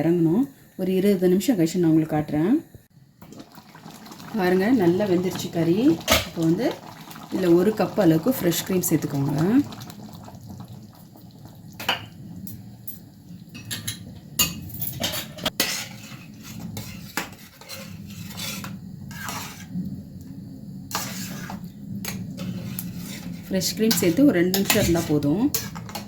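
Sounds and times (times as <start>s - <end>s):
spoon scraping and clinking pot: 13.6s - 19.7s, 20.9s - 26.0s.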